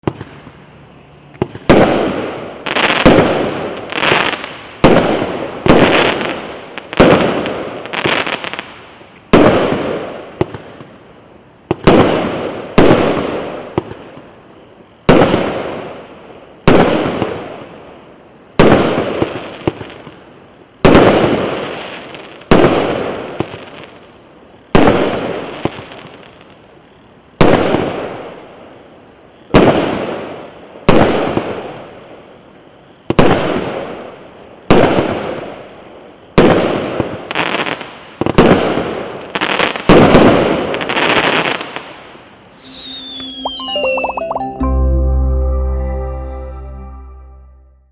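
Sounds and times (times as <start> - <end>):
fireworks bangs: 42.6 - 44.0.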